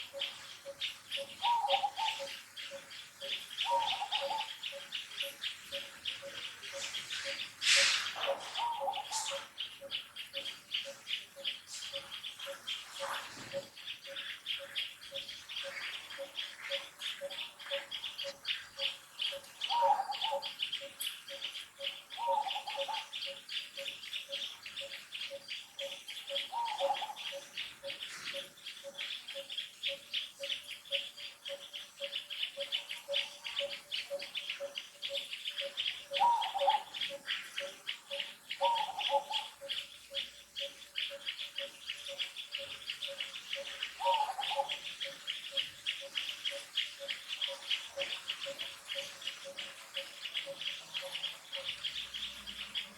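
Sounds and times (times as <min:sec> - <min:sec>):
short bird calls: 0:06.7 - 0:09.6.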